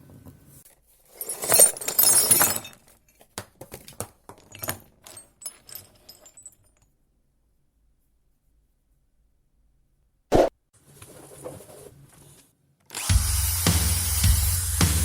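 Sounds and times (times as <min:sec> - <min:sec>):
metal pieces rattling: 0:01.1 - 0:03.2.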